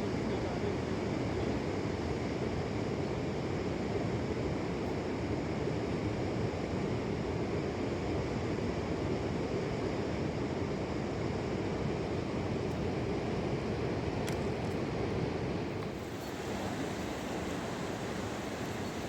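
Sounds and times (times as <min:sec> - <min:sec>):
river rushing: 0:15.9 - 0:19.0.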